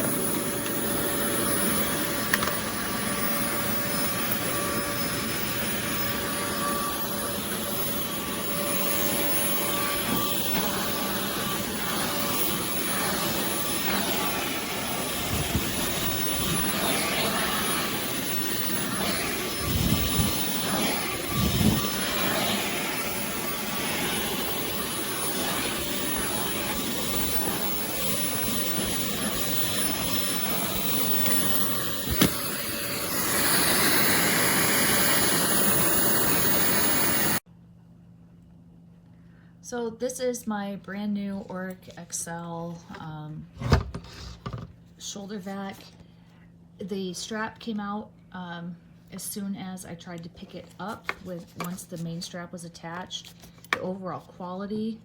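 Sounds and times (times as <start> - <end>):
vacuum cleaner running: 0.0 - 37.4.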